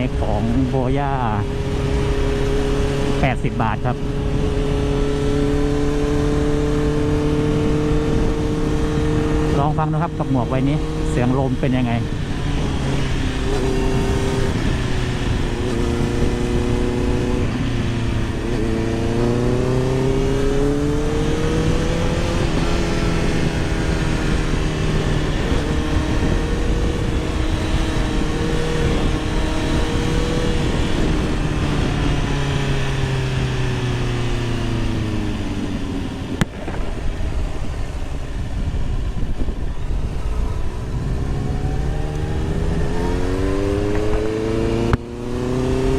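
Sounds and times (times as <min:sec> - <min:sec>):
motorcycle engine: 0:00.0 - 0:45.9
wind rushing over helmet: 0:21.6 - 0:45.6.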